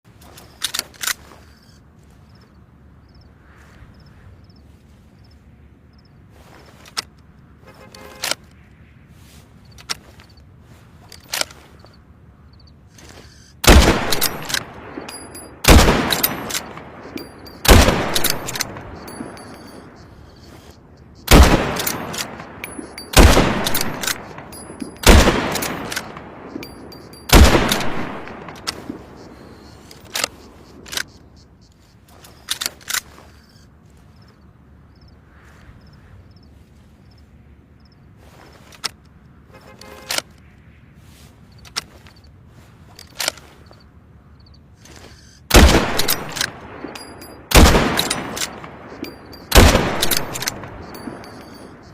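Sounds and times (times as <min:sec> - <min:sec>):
rifle shots with echo: 0:13.6 - 0:20.0, 0:21.2 - 0:29.9, 0:45.5 - 0:51.9
rifle bolt clicks: 0:13.7 - 0:19.8, 0:21.3 - 0:31.2, 0:45.5 - 0:51.9.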